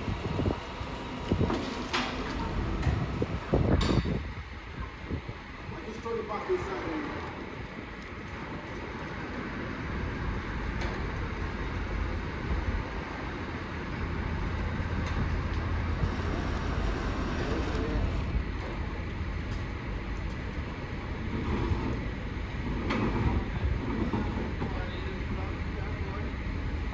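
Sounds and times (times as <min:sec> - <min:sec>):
low rumble of road traffic: 0:00.0 - 0:26.9
distant voices: 0:00.1 - 0:26.9.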